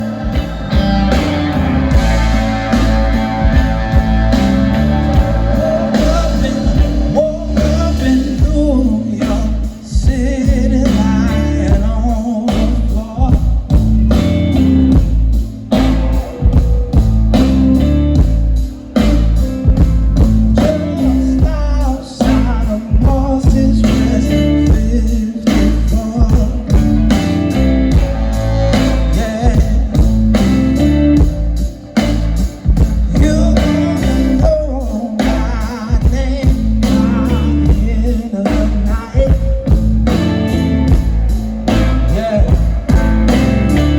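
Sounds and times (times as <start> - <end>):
electric guitar: 0.0 - 43.9
live blues band: 0.0 - 43.9
man singing: 2.1 - 14.2, 20.5 - 31.4, 32.6 - 43.9.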